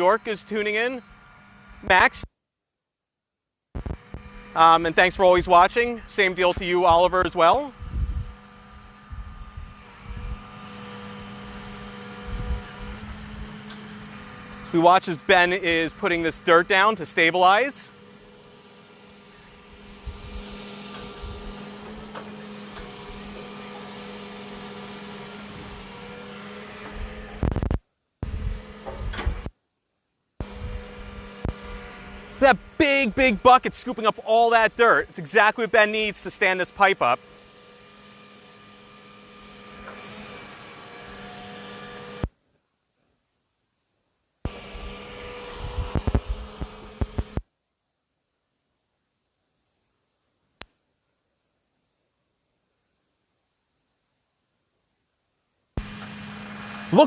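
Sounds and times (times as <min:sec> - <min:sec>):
excavator engine humming: 0:04.0 - 0:27.6, 0:30.4 - 0:42.3, 0:44.5 - 0:47.4, 0:55.8 - 0:57.0.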